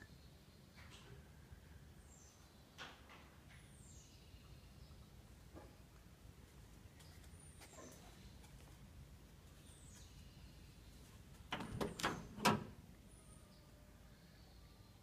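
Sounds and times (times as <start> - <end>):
faint high bird chirps: 13.1 - 15.0.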